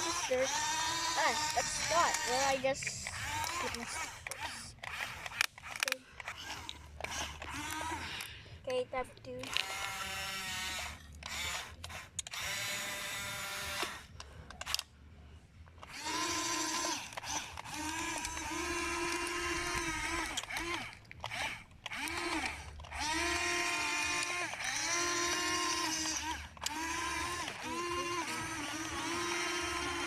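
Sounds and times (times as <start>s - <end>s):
small electric motors whining: 0.0s - 30.0s.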